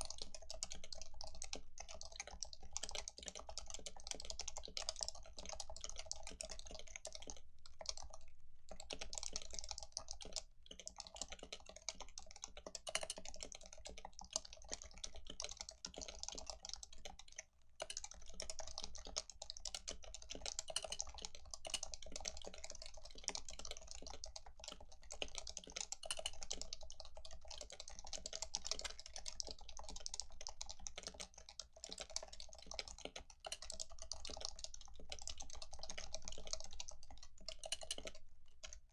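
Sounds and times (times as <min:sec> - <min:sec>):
fast typing on keyboard: 0:00.0 - 0:38.9.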